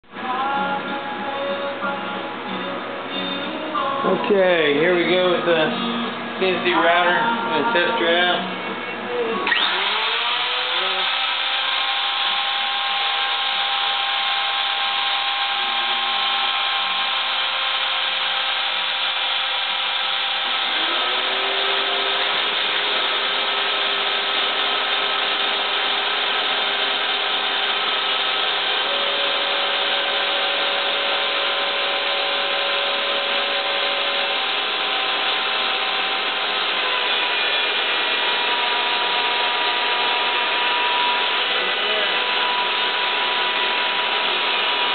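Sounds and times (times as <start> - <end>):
stepper motor tones: 0.2 - 44.9
router motor whining: 9.2 - 44.9.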